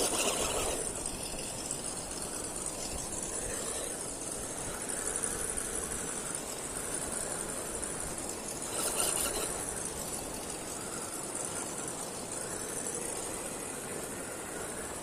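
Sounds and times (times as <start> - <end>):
electric motor and gears whining: 0.0 - 15.0.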